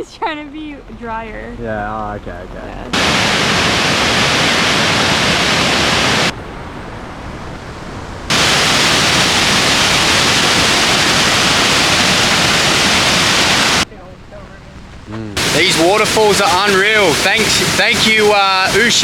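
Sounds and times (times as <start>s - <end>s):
waterfall rushing: 2.9s - 13.9s, 15.4s - 19.0s.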